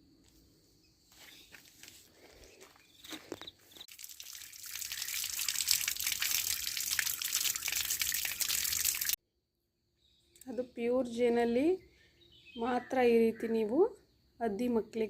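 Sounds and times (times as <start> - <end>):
water running: 3.8 - 9.2.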